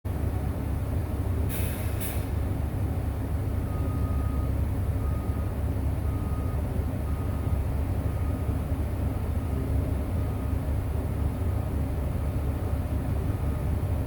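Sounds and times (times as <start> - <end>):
faint backup alarm beeping: 3.6 - 8.6.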